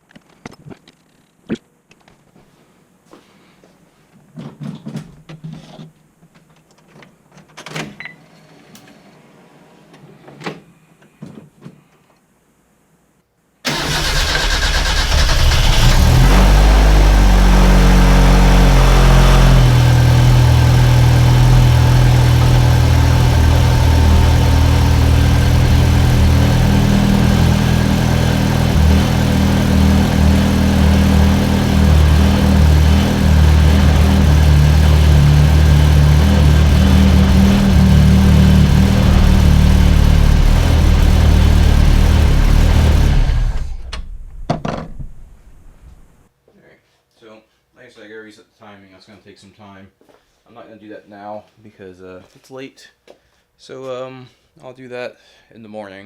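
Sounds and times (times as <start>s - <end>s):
car engine revving and idling: 13.7s - 46.2s.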